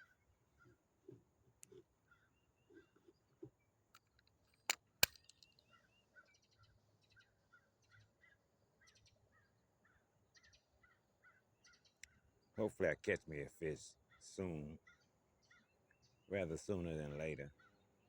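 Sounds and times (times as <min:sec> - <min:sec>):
birds chirping: 0:00.0 - 0:12.9
sharp clicks: 0:04.0 - 0:05.6.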